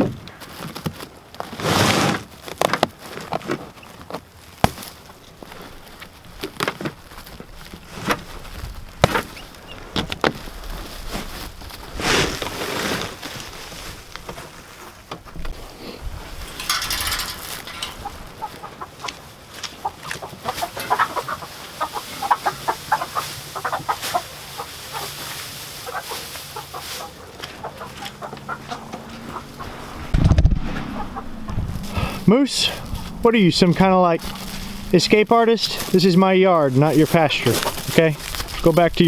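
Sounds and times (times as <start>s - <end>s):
chickens clucking: 15.8s - 38.8s.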